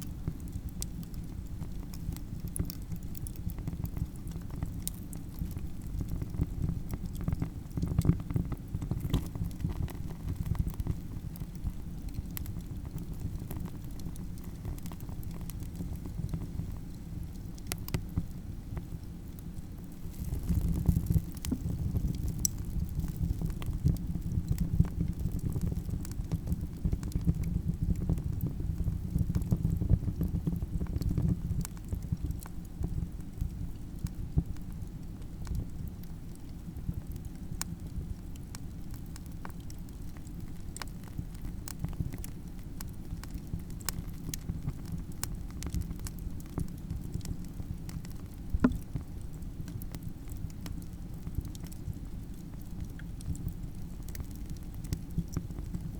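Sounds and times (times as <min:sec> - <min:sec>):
campfire roaring: 0:00.0 - 0:55.9
wood crackling and popping: 0:00.0 - 0:55.9.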